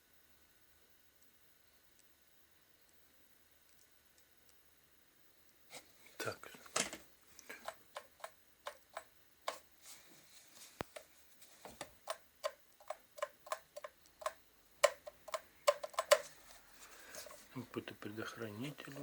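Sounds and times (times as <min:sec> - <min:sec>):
plastic kettle parts clicking: 0:06.7 - 0:09.6, 0:11.7 - 0:16.3.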